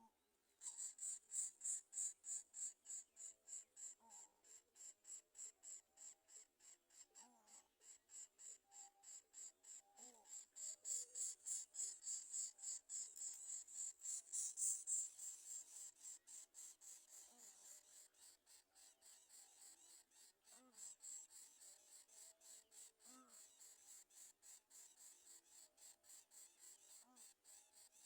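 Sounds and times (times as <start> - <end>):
high-pitched insect chirring: 10.6 - 15.6.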